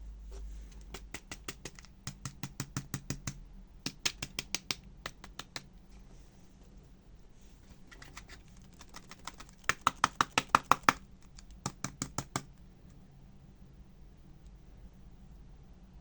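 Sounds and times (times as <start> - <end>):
sharp clicking taps: 0.7 - 5.7, 8.7 - 12.5.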